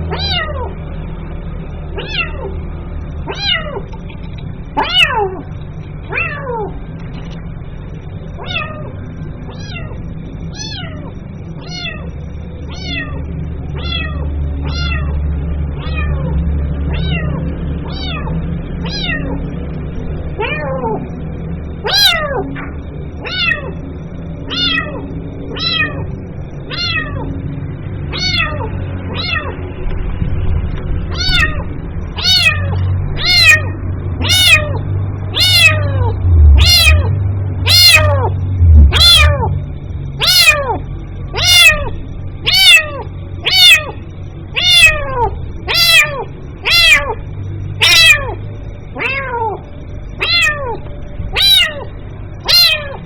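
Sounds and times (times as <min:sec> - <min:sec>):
kitten mewing: 0:00.0 - 0:00.8, 0:02.0 - 0:02.6, 0:03.3 - 0:06.8, 0:08.4 - 0:13.2, 0:13.8 - 0:15.2, 0:16.9 - 0:19.4, 0:20.4 - 0:21.1, 0:21.8 - 0:23.8, 0:24.5 - 0:26.1, 0:26.7 - 0:27.3, 0:28.1 - 0:29.6, 0:31.1 - 0:39.6, 0:40.2 - 0:47.2, 0:47.8 - 0:53.0.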